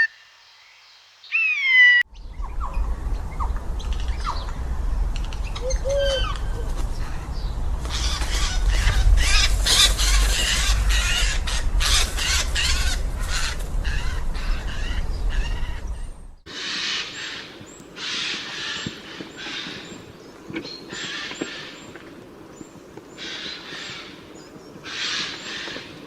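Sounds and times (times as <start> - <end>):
low rumble: 2.1 - 16.4.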